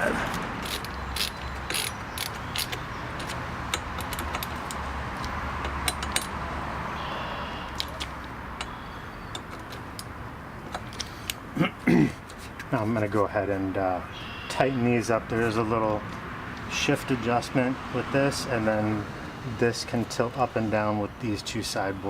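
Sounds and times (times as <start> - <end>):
small metal hardware clinking: 0.3 - 6.4, 7.8 - 11.4.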